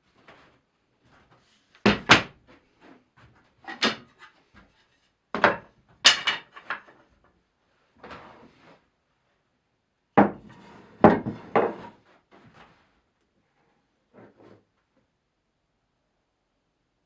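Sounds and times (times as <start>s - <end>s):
wooden boards knocking: 1.8s - 2.4s.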